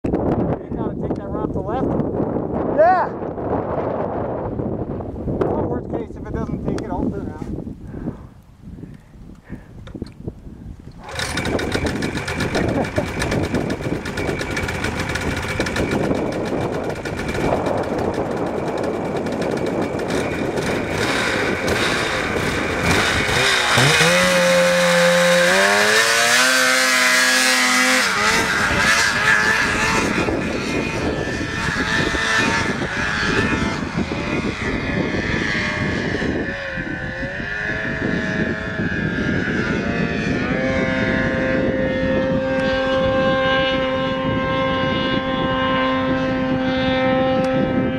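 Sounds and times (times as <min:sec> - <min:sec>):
snowmobile engine at high revs: 0:10.9 - 0:47.9.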